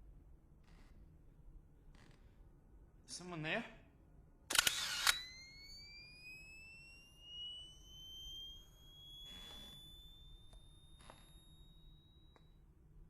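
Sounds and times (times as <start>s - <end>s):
flash recharging whine: 4.5s - 12.6s.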